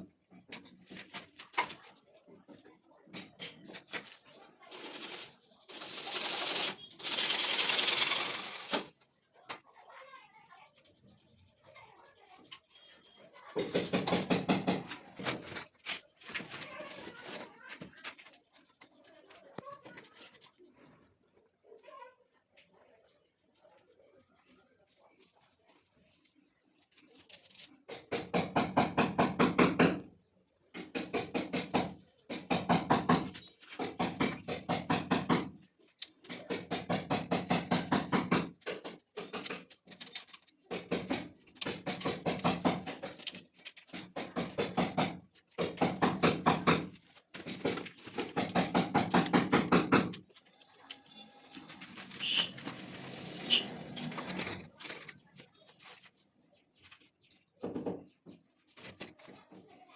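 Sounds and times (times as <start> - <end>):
power tool hammering: 30.8 - 35.6, 40.7 - 43.3, 43.9 - 50.2.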